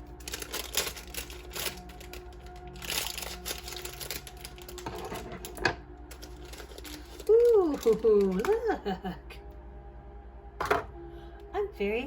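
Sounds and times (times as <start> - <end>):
plastic bag crinkling and tearing: 0.0 - 8.7
soft background music: 0.0 - 12.0.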